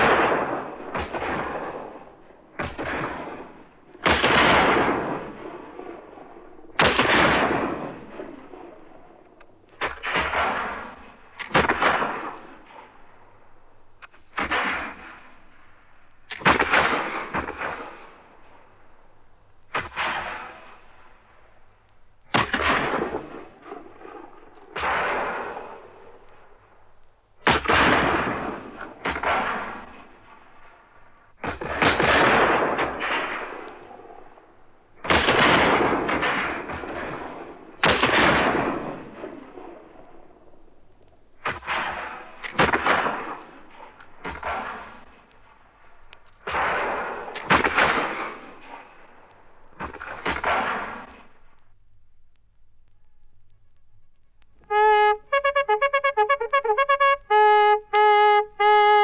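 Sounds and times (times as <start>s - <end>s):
heavy gunshots with echo: 0.0s - 12.9s, 22.3s - 26.0s, 27.5s - 30.4s, 31.4s - 40.5s, 46.4s - 51.2s.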